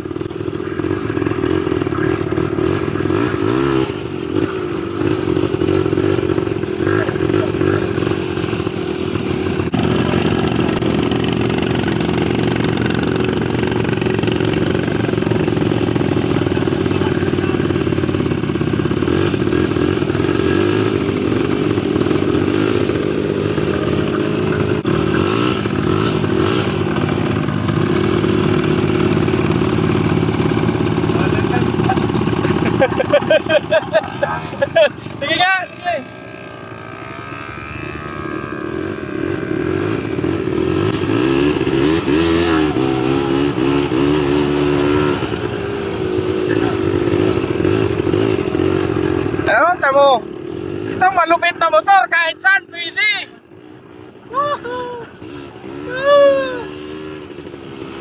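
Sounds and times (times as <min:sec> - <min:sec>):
atv engine running under load: 0:00.0 - 0:58.0
machine rattling over bumps: 0:00.2 - 0:50.2.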